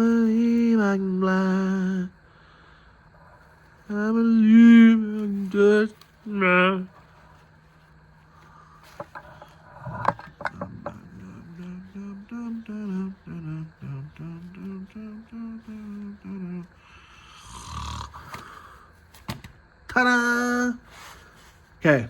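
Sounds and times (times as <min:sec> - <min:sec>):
man humming a tune: 0:00.0 - 0:02.2, 0:03.9 - 0:07.0, 0:08.9 - 0:18.4.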